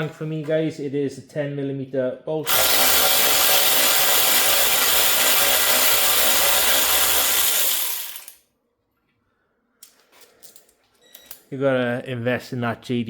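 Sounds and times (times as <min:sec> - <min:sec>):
cordless power tool spinning: 0:02.4 - 0:08.4.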